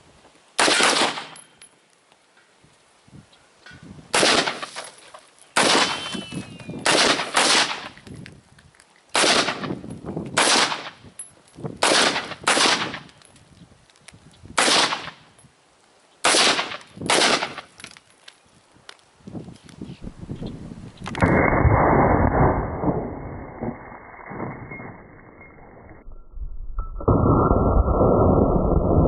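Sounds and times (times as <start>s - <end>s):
rifle shots with echo: 0.6s - 1.4s, 4.1s - 4.8s, 5.6s - 6.1s, 6.8s - 7.9s, 9.2s - 9.8s, 10.4s - 11.0s, 11.8s - 13.1s, 14.6s - 15.2s, 16.2s - 17.7s.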